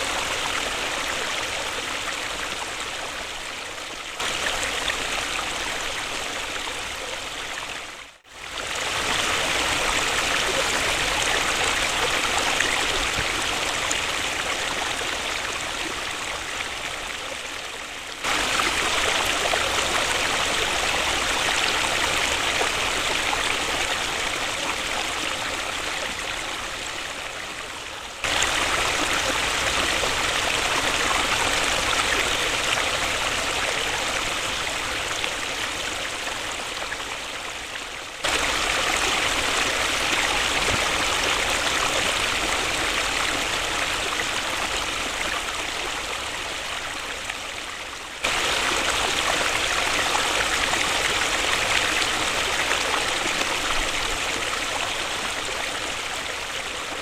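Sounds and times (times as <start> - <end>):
waterfall rushing: 18.2 - 25.5, 28.2 - 36.8, 38.2 - 47.3, 48.2 - 57.0.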